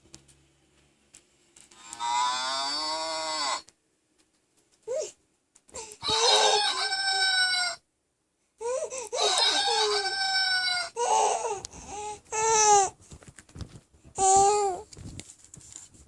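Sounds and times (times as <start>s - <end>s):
recorded rooster crowing: 6.0s - 7.8s, 9.2s - 11.0s.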